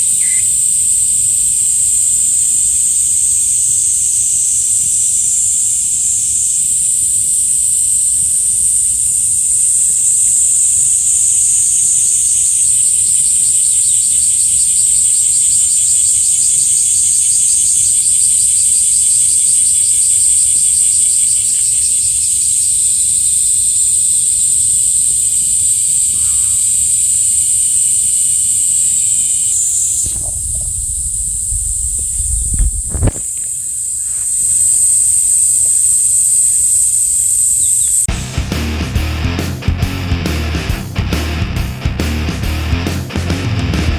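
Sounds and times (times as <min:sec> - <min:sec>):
insects shrilling buzz: 0:00.0 - 0:38.4
fast pulsing trill: 0:06.2 - 0:38.4.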